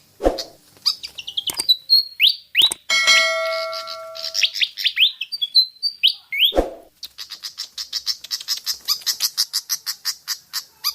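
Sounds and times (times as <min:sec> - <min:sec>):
bird chirping: 0:00.4 - 0:06.6.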